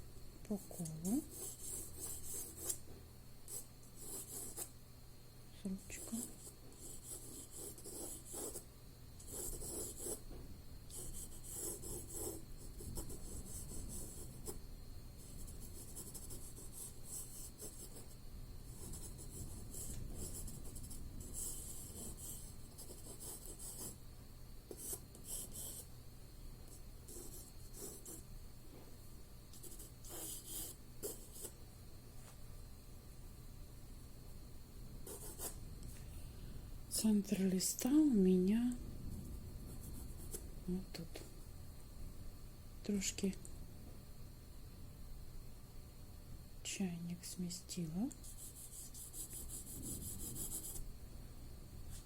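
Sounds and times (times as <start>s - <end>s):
pencil scratching on paper: 1.0s - 2.8s, 3.5s - 4.7s, 6.0s - 10.2s, 10.9s - 14.6s, 15.2s - 24.0s, 24.7s - 25.9s, 27.1s - 28.2s, 29.6s - 31.6s, 35.1s - 35.6s, 48.2s - 50.8s.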